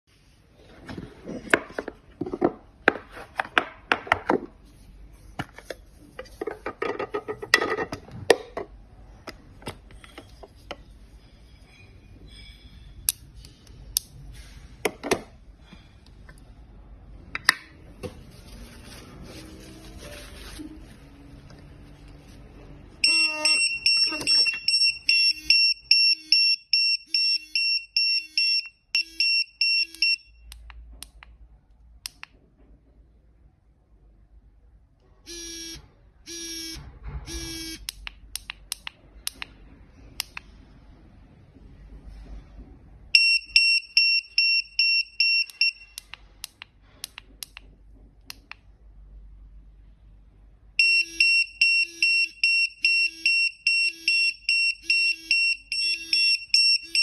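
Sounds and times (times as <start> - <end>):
rapid electronic alarm beeping: 23.0 - 30.2, 50.8 - 57.0
longer alarm tones: 23.0 - 30.3.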